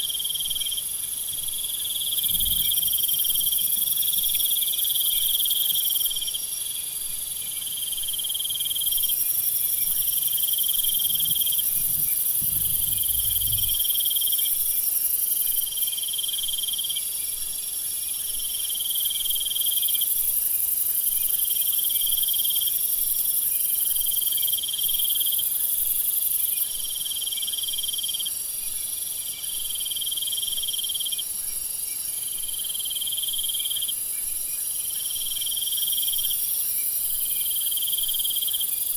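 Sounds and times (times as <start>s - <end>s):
lower insect trill: 0.0s - 38.9s
low rumble: 12.4s - 13.8s.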